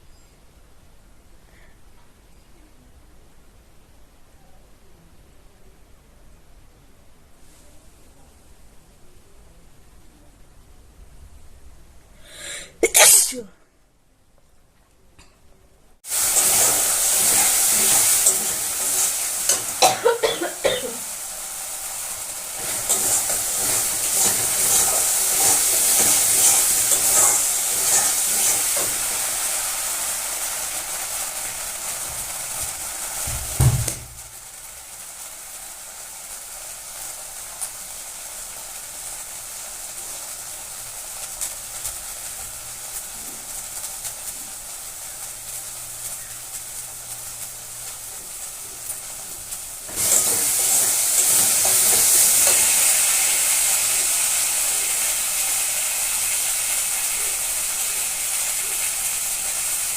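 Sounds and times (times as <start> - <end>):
steady hiss: 0.0 - 59.9
food sizzling in a pan: 16.0 - 59.9
low thump: 33.3 - 34.2.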